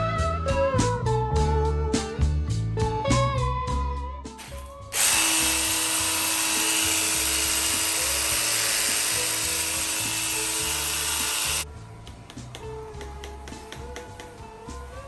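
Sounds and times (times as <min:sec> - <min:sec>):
pressure washer jet hissing: 0:05.0 - 0:11.6.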